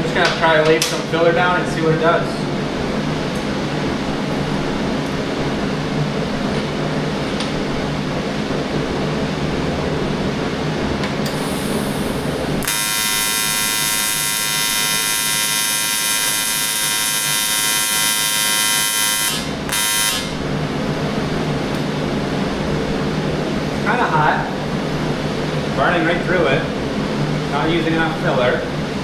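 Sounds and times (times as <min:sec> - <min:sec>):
steady machine hum: 0:00.0 - 0:29.0
welding arc buzzing: 0:11.2 - 0:20.6.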